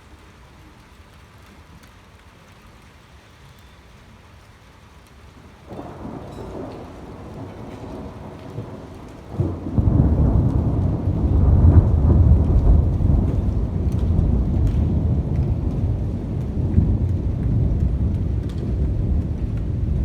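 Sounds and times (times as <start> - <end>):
steady rain: 0.0 - 20.0
thunder rumbling and cracking: 5.7 - 20.0.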